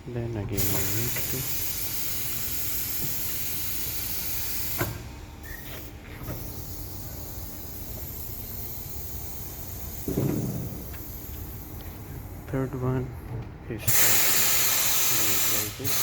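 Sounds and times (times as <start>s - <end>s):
compressed air hissing: 0.6s - 5.0s, 5.8s - 11.8s, 13.9s - 16.0s.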